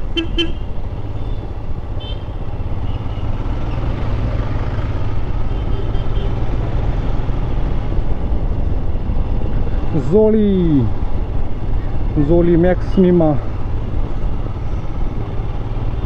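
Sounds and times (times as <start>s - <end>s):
motorcycle engine drone: 0.0s - 16.0s
wind and road noise: 0.0s - 16.0s.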